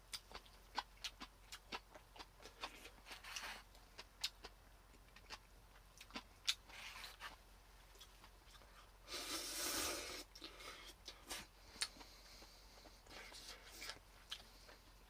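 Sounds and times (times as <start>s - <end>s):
rustling scraping noise: 3.0s - 3.7s.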